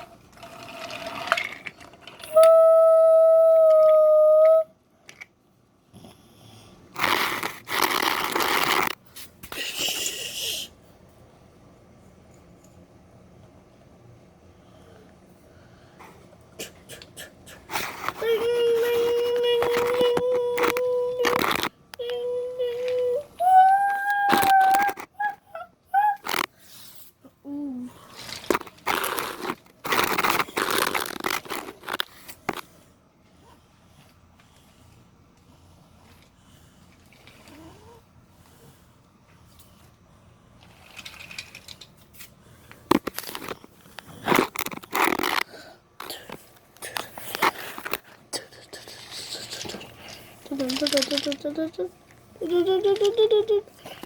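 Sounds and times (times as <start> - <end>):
wooden pieces scraping and clattering: 0.0 - 2.3, 28.1 - 32.6, 49.6 - 51.7
wooden toy train pieces handled: 40.6 - 42.2, 48.8 - 51.8, 52.4 - 54.0.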